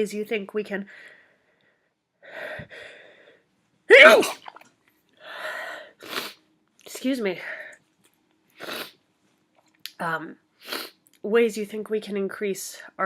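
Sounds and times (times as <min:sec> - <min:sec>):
woman sneezing: 0:03.9 - 0:04.6.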